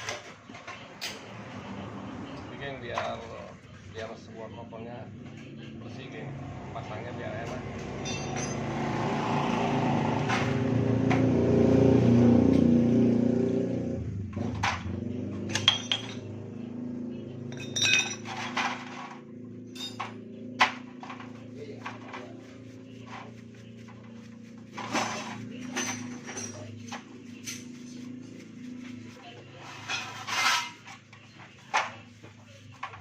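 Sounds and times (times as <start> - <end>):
metal tools clinking: 8.0 - 8.7, 17.5 - 20.2, 24.8 - 27.9.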